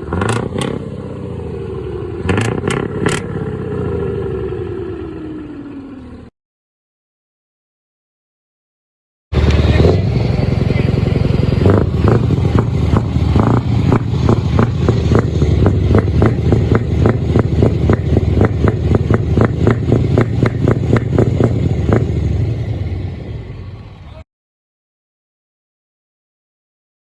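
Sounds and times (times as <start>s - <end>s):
truck engine deep rumble: 0.0s - 6.3s, 9.3s - 24.2s.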